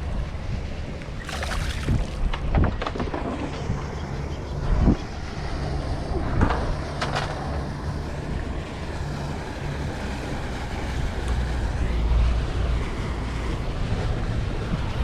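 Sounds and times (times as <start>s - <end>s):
wind buffeting microphone: 0.2s - 3.9s
water moving around boat: 0.3s - 3.8s, 5.8s - 15.0s.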